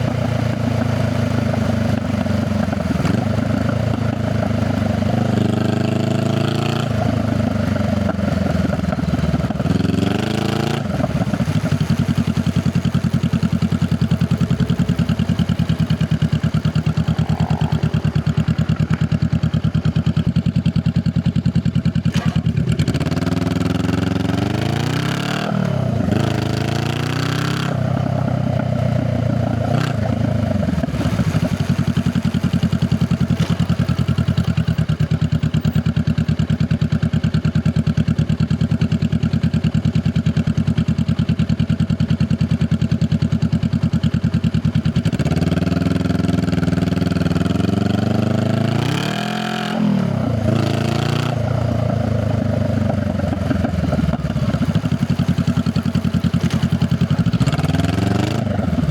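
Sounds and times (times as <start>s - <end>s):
motorcycle engine revving: 0.0s - 58.9s.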